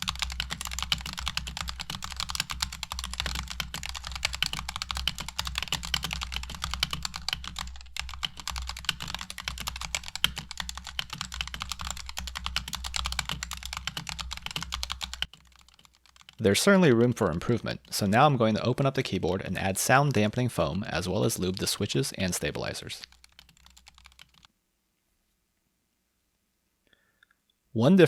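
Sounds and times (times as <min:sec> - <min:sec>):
fast typing on mechanical keyboard: 0:00.0 - 0:16.4, 0:21.3 - 0:24.5.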